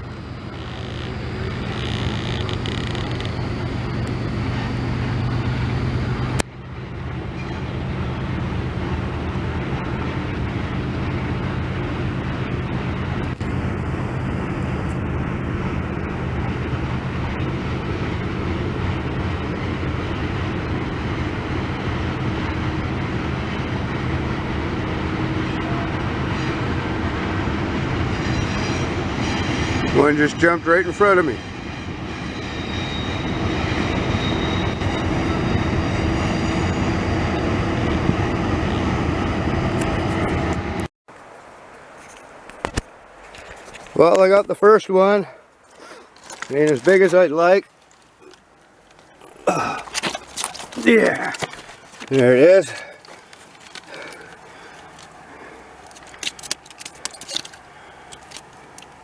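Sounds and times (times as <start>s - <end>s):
low droning hum: 0.0s - 27.2s
train rumbling past: 0.0s - 40.9s.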